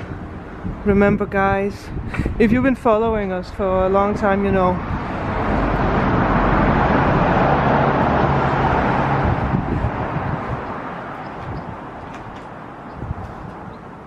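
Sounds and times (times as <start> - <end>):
car driving past: 4.8 - 12.2.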